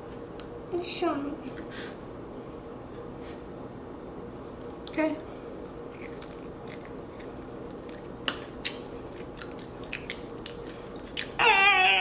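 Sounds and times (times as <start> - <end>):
chewing jerky with crunches: 4.9 - 11.4.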